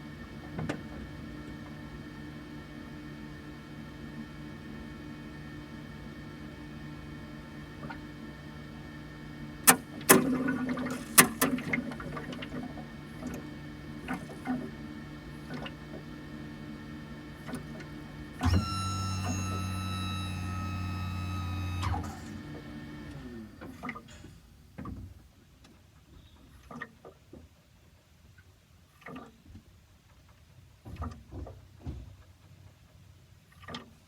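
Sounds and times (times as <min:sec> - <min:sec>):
loud buzzing tone with whine: 0:18.4 - 0:23.1.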